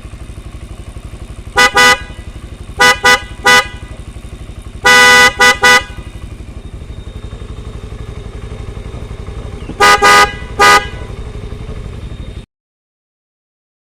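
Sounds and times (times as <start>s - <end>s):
motorcycle engine idling: 0.0s - 12.5s
loud horn toots: 1.4s - 4.1s, 4.8s - 6.4s, 9.6s - 11.7s.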